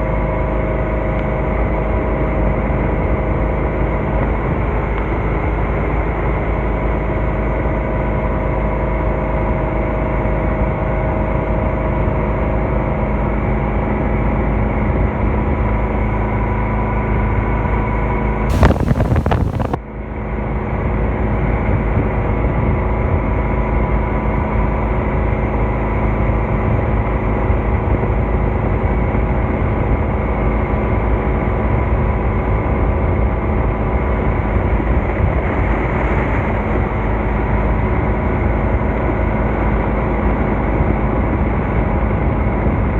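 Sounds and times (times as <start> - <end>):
motorboat engine running: 18.5 - 19.8.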